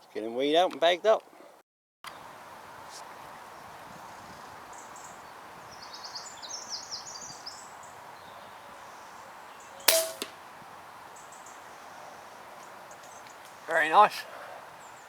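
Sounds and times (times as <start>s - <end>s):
air rifle shot: 9.9s - 10.4s.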